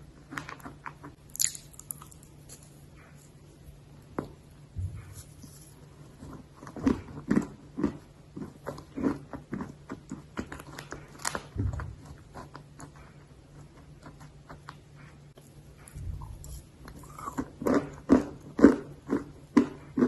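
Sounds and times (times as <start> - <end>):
chewing crunchy dry earth: 5.0 - 20.0.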